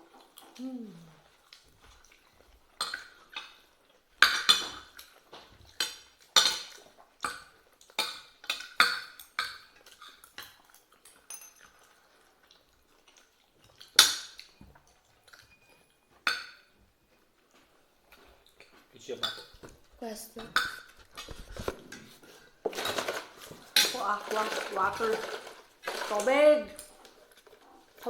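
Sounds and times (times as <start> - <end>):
cutlery clinking on a plate: 11.1 - 11.8, 15.3 - 16.8, 19.2 - 19.7.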